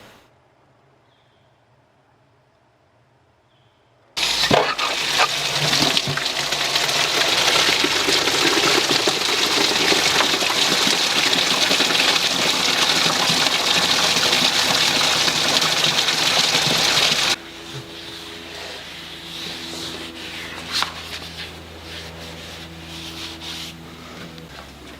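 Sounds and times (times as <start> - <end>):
water gushing into container: 4.2 - 17.4.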